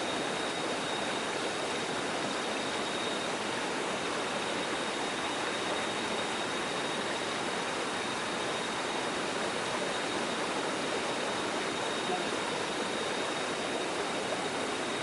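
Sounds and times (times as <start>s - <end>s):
stream water rushing: 0.0s - 15.0s
thin high tone: 11.1s - 15.0s.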